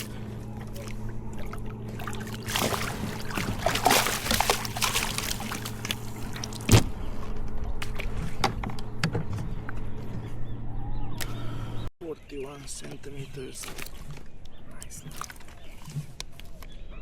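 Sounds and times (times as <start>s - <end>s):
water splashing and trickling: 0.0s - 8.2s
steady low hum: 0.0s - 8.8s.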